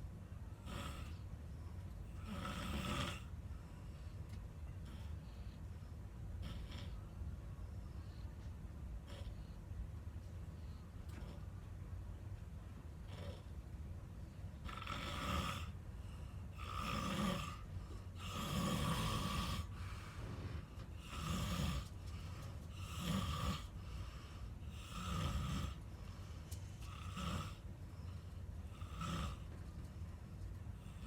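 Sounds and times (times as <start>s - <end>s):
person snoring: 18.2s - 19.7s.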